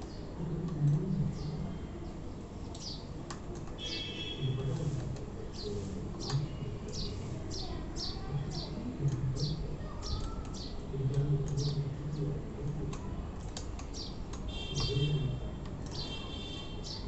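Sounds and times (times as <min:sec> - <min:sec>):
bird chirping: 0:13.9 - 0:15.3.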